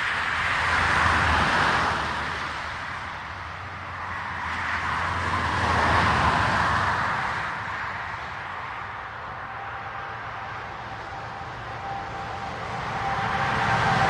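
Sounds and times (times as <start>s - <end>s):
cars passing on road: 0.0s - 14.0s.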